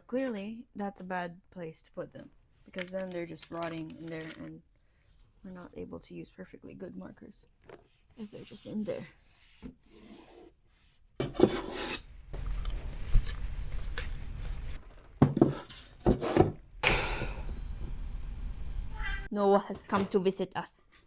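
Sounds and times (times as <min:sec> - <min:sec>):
objects rubbed and scraped: 0:07.7 - 0:16.6.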